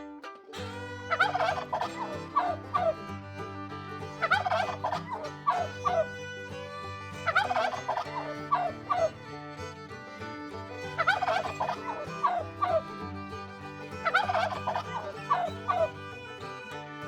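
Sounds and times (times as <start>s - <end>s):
turkey gobbling: 1.1s - 3.0s, 4.2s - 6.1s, 7.2s - 9.1s, 11.0s - 12.9s, 14.0s - 15.9s.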